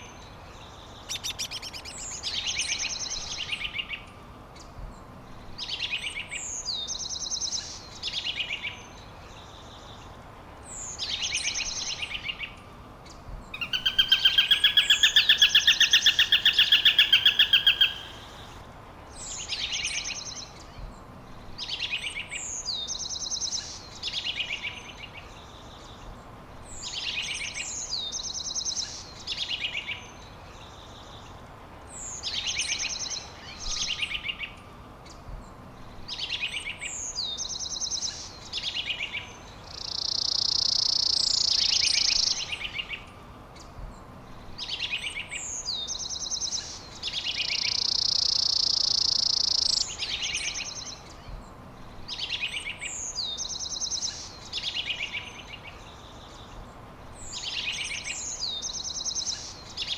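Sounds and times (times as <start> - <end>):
songbird song phrases: 0.0 - 59.9
buzzy bird trill: 13.6 - 18.6
loud rapid bird trill: 13.6 - 18.6.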